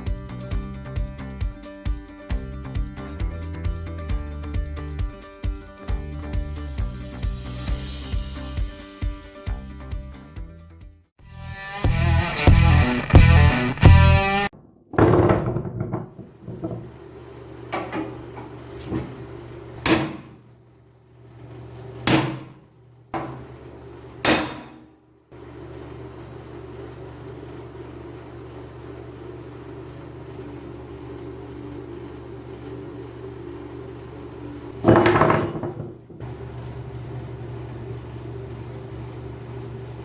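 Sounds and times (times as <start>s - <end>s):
tools knocking and clanking: 14.6s - 17.0s, 17.7s - 19.2s, 19.8s - 20.4s, 22.0s - 22.6s, 23.2s - 23.5s, 24.2s - 24.9s, 34.8s - 36.3s
steady machine hum: 14.6s - 40.0s.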